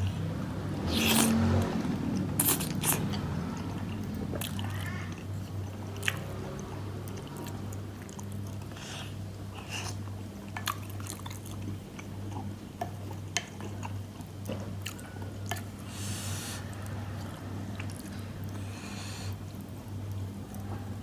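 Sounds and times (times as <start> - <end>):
steady low hum: 0.0 - 21.0
slurp: 0.8 - 1.7, 2.4 - 3.1
wet chewing: 0.8 - 3.4.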